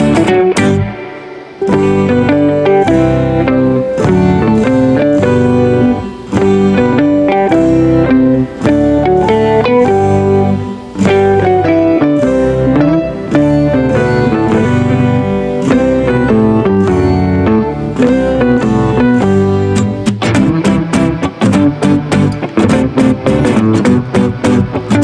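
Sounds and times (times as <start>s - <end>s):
bass line: 0.0s - 1.0s, 1.6s - 25.0s
plucked guitar music: 0.0s - 25.0s.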